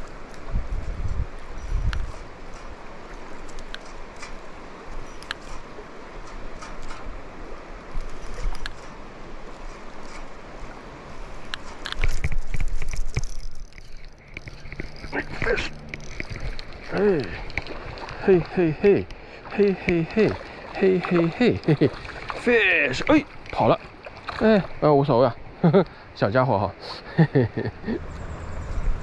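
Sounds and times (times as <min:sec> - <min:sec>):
river water rushing: 0:02.3 - 0:12.0, 0:13.7 - 0:26.6.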